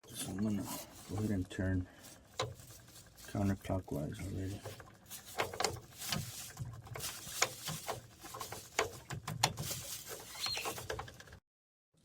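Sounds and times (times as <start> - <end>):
tools clicking and knocking: 4.6 - 11.4.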